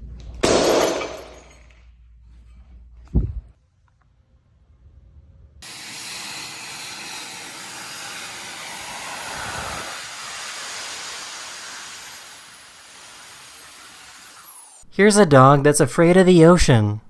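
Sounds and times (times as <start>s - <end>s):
loud rushing hiss: 5.6s - 14.8s.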